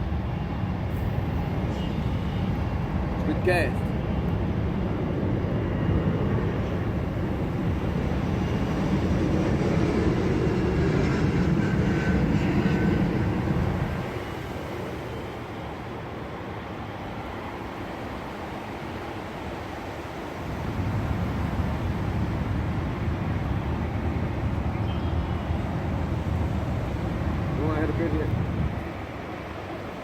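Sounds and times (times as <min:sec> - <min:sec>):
jet airliner flying over: 0:00.0 - 0:30.0.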